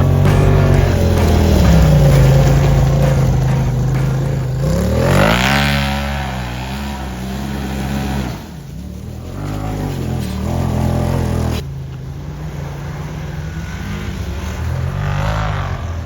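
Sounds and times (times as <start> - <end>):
side-by-side engine revving: 0.0 - 16.0.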